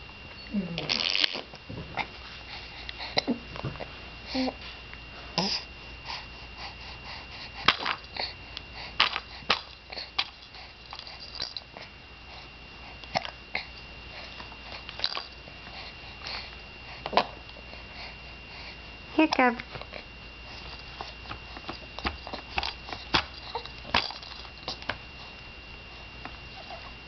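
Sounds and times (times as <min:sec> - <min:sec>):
baby hiccupping: 0:00.8 - 0:01.6
baby mouth sounds: 0:00.8 - 0:01.6.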